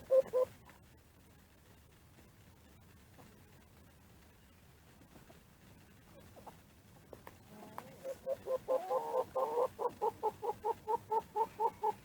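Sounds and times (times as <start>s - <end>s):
hen clucking: 7.5s - 12.0s.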